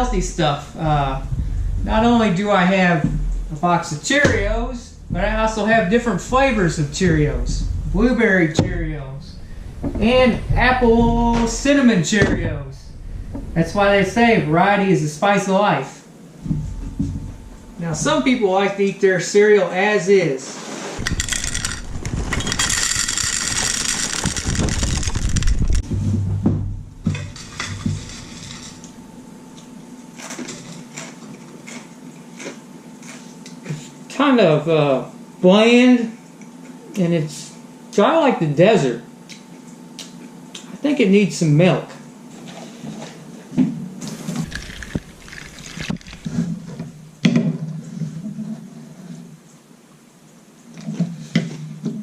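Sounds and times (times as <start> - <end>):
cereal poured into a bowl: 21.0 - 25.8, 44.4 - 46.4
scattered knocks and handling: 21.0 - 29.0, 44.4 - 47.6
liquid pouring into a bowl: 44.4 - 46.4.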